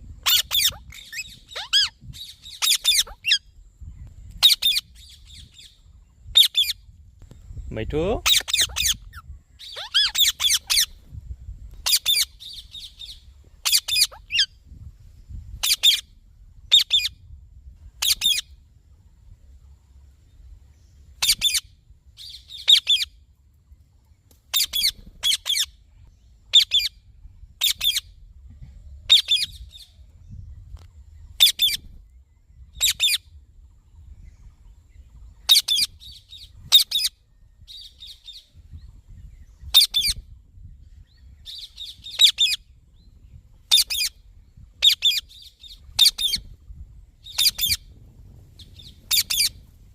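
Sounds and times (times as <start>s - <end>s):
parrot squawking shrilly: 0.2s - 1.9s, 2.6s - 3.4s, 8.2s - 10.9s, 13.7s - 14.5s, 49.1s - 49.6s.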